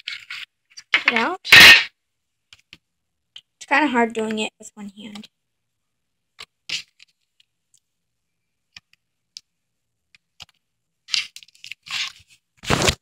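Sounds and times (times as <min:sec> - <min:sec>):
slime scraping and rustling: 0:11.0 - 0:13.0.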